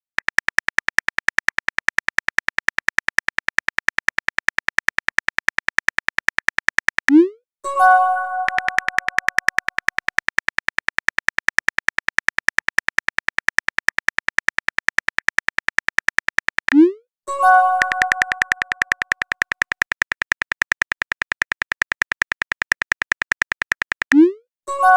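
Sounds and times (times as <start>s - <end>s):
phone keyboard typing clicks: 0.2s - 7.4s, 8.3s - 17.0s, 17.6s - 24.4s
notification chime: 7.7s - 9.2s.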